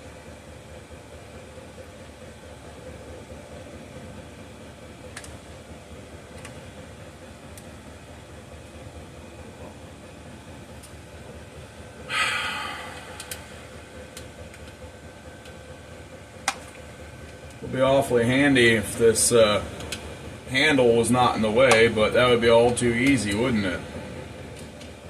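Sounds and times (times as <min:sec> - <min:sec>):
steady hum: 0:00.0 - 0:25.0
loud hissing burst: 0:12.1 - 0:13.7.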